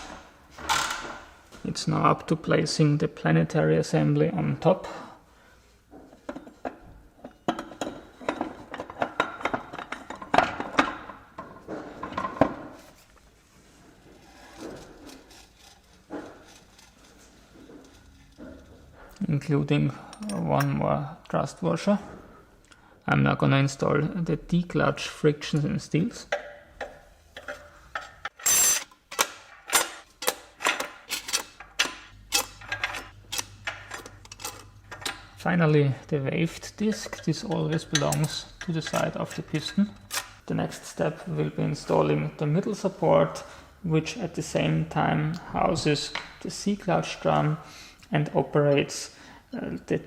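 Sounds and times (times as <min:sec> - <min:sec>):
metal gearbox parts clinking: 0:28.3 - 0:35.0
metal clutch plates clinking: 0:36.7 - 0:40.4.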